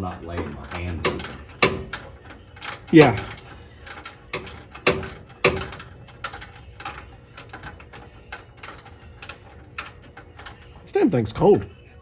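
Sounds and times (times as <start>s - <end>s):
hand ratchet clicking: 0.0s - 11.4s
metal knocks: 0.0s - 11.6s.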